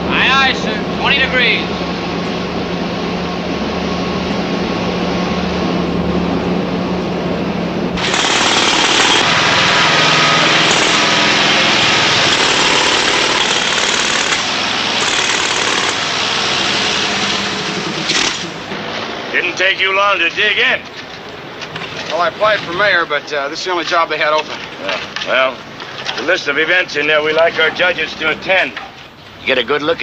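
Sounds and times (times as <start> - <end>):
low machine drone: 0.0 - 19.6
jackhammer pounding: 8.0 - 18.8.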